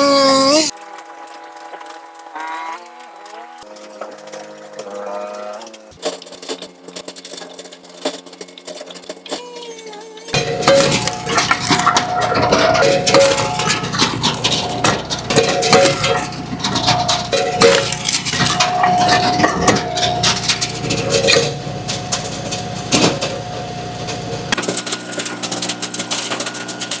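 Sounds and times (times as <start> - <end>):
firewood clattering onto pile: 0.7 - 9.5, 10.3 - 27.0
conveyor machinery hum: 9.1 - 27.0.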